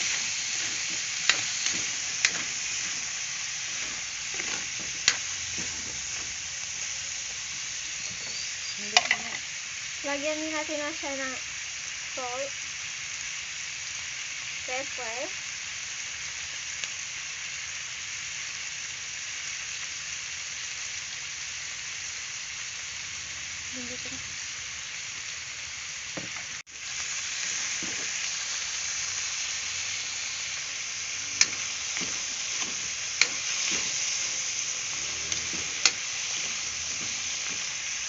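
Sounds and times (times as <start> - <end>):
spatula stirring food: 0.0 - 6.9, 27.6 - 28.3, 31.1 - 38.0
food sizzling in a pan: 0.0 - 38.0
utensil clicking against pan: 31.4 - 34.0.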